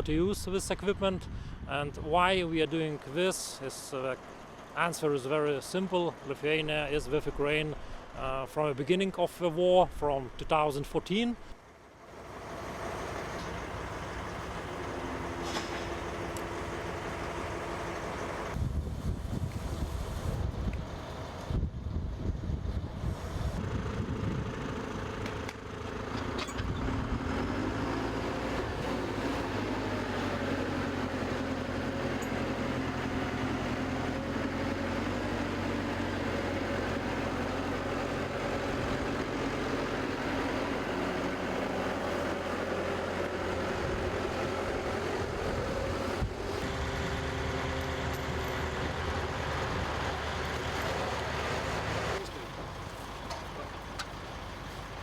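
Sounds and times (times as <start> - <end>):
vehicle engine running: 11.6 - 55.0.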